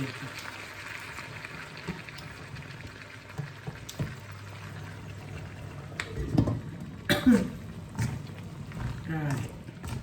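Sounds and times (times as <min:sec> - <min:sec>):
food sizzling in a pan: 0:00.0 - 0:05.8.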